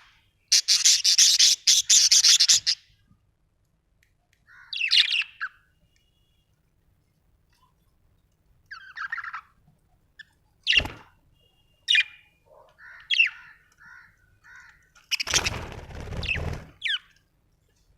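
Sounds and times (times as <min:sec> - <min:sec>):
budgerigars chirping: 0:00.5 - 0:02.8.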